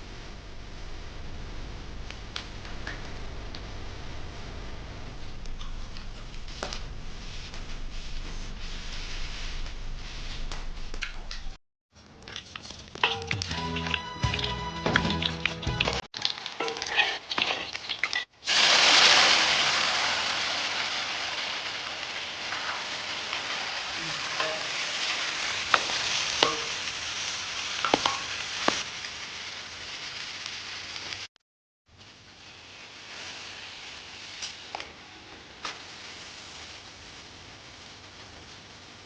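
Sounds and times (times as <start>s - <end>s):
oil popping and crackling: 2.0s - 3.6s, 12.2s - 31.3s, 32.4s - 39.0s
food sizzling in hot oil: 13.0s - 31.3s, 32.0s - 39.0s.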